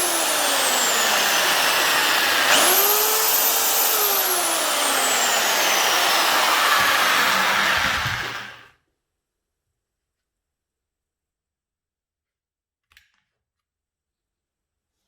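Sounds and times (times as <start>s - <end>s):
power drill motor whine: 0.0s - 8.7s.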